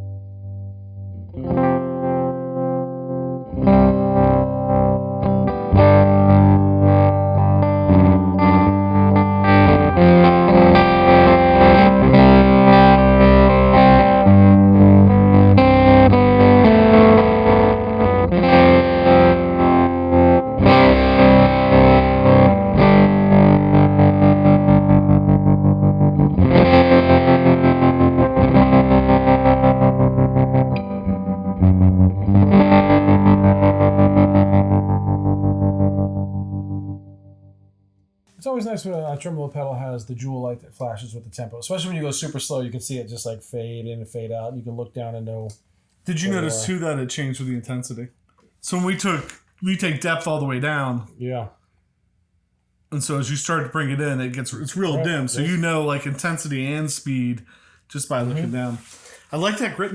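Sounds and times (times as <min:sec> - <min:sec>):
distorted electric guitar tremolo chords: 0:00.0 - 0:37.6.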